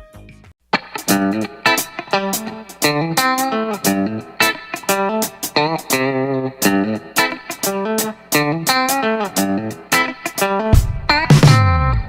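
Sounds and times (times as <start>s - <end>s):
bass guitar: 0.0s - 1.8s, 10.7s - 12.0s
plucked electric guitar chords: 0.7s - 12.0s.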